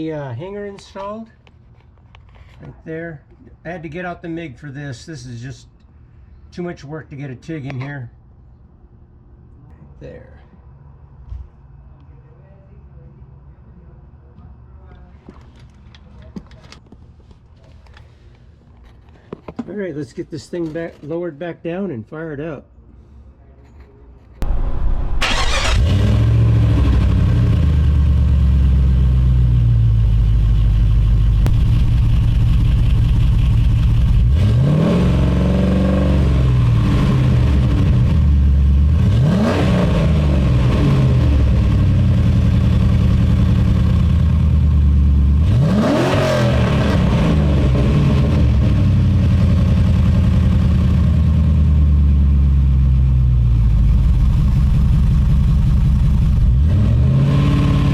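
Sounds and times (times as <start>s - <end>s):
car engine starting and idling: 24.4s - 57.9s.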